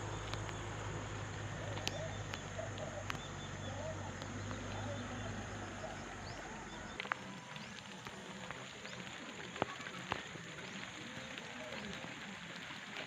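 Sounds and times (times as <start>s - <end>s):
faint bird calls: 0.0s - 7.9s
low hum: 0.0s - 7.9s.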